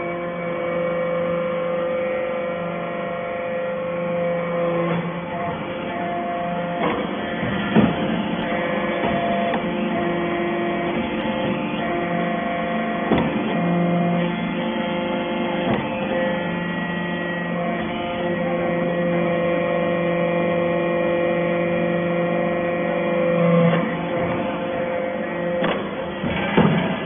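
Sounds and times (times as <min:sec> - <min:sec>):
hydraulic baler humming: 0:00.0 - 0:27.0.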